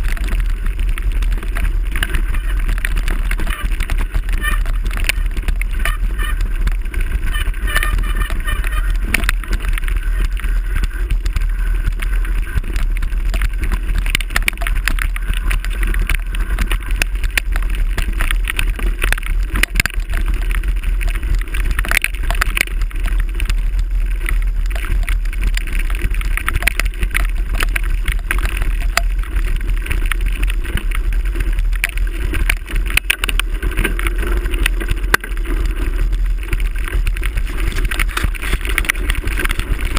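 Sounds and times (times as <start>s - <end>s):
bike rattling and clattering: 0.0s - 39.9s
low wind rumble: 0.0s - 39.9s.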